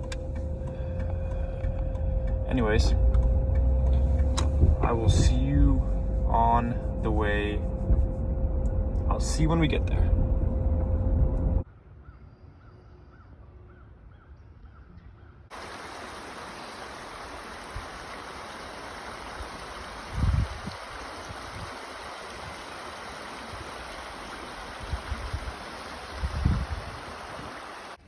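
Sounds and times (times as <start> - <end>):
creek water rushing: 15.5 - 28.0.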